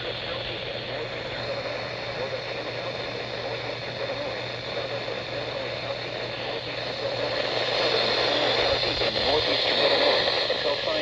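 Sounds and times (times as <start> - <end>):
steady hiss: 5.3 - 11.0.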